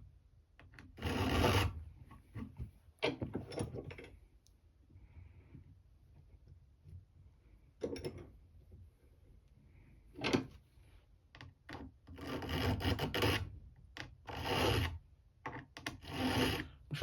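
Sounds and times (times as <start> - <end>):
file scraping on steel: 1.0 - 1.8, 12.1 - 13.5, 14.2 - 15.0, 15.8 - 16.8.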